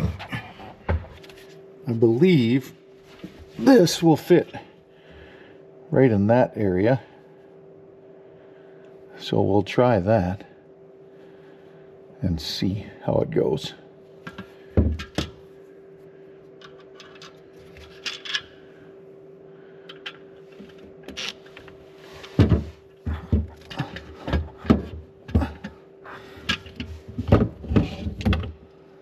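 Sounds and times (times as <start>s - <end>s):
low hum: 0.0s - 29.0s
parts clicking and knocking: 16.6s - 18.6s, 19.8s - 25.8s.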